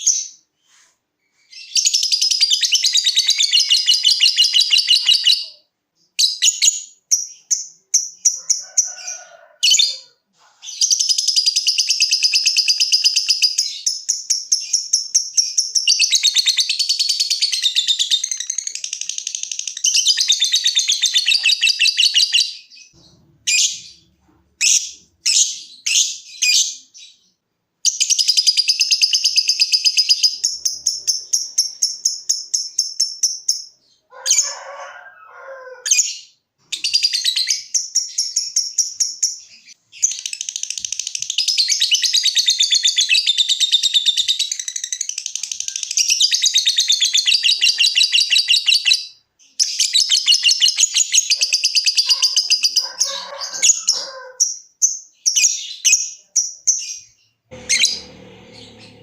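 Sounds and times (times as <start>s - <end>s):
lovebird chattering trill: 49.6s - 59.0s.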